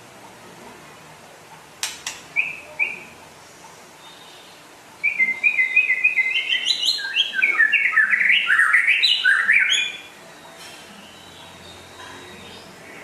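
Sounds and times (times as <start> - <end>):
songbird singing: 2.0 - 3.2, 4.0 - 13.0.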